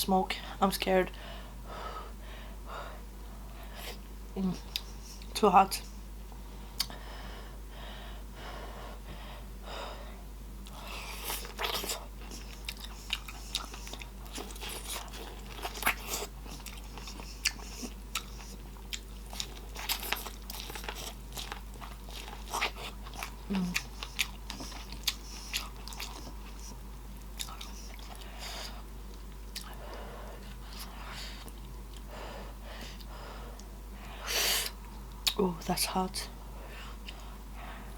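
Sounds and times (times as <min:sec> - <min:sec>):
biting and chewing: 0:10.7 - 0:32.1.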